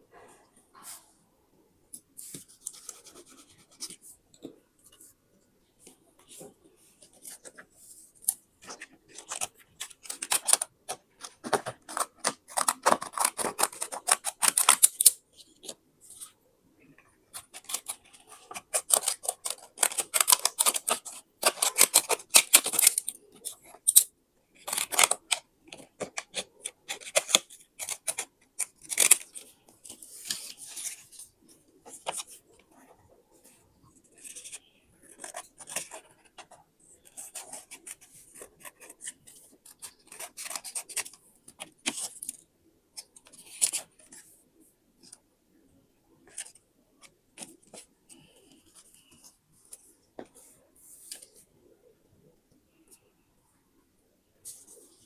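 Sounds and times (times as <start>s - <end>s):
scissors cutting paper: 11.4s - 15.2s, 17.4s - 23.2s, 23.8s - 25.4s, 26.0s - 29.5s.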